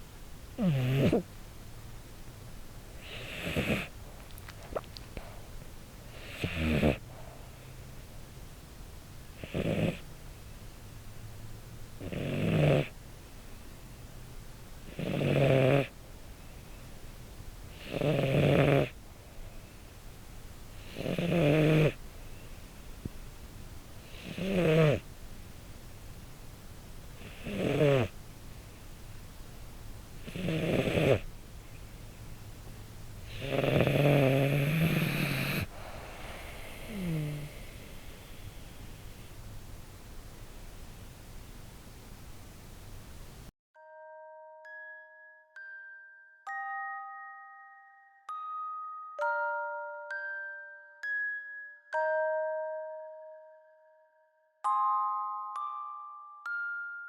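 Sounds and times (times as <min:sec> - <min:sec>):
cat snoring: 0:00.6 - 0:01.3, 0:03.0 - 0:04.0, 0:06.1 - 0:07.6, 0:09.3 - 0:10.1, 0:12.0 - 0:13.0, 0:14.8 - 0:16.0, 0:17.7 - 0:19.0, 0:20.8 - 0:22.0, 0:24.0 - 0:25.1, 0:27.2 - 0:28.2, 0:30.2 - 0:31.3, 0:33.2 - 0:39.4
cat breathing hiss: 0:34.7 - 0:39.5.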